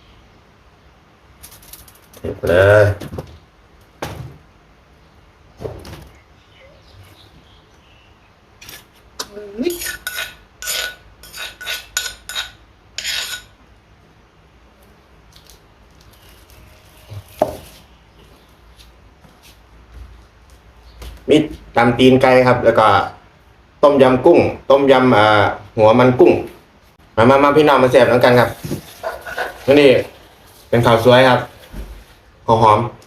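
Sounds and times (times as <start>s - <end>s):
utensils clinking against dishes: 9.6s - 13.6s.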